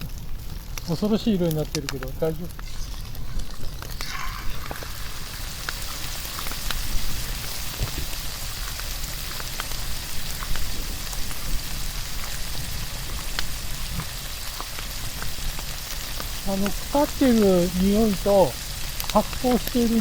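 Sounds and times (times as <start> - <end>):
steak sizzling with pops: 0.0 - 20.0
low rumble: 2.3 - 6.7.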